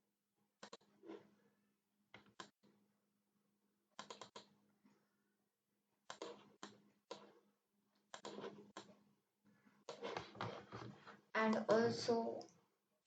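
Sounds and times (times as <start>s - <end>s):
computer mouse clicking: 0.6s - 1.2s, 2.2s - 2.7s, 4.0s - 4.6s, 6.1s - 7.4s, 8.0s - 8.9s, 9.9s - 10.9s.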